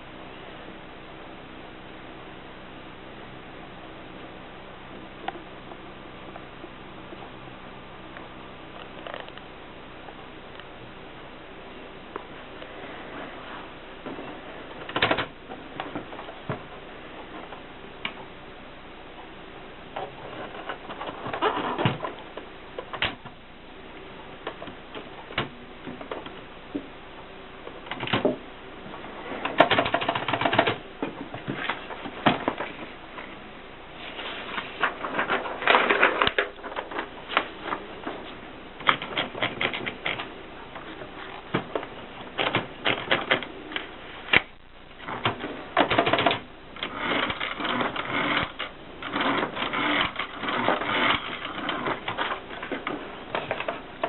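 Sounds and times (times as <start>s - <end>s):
typewriter keystrokes: 14.9s - 15.4s, 29.5s - 30.8s, 45.2s - 46.4s.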